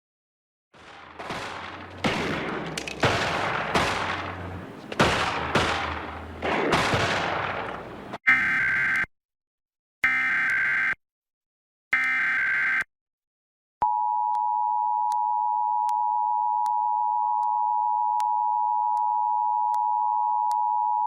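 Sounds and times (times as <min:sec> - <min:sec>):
sharp bangs: 0:00.8 - 0:08.2.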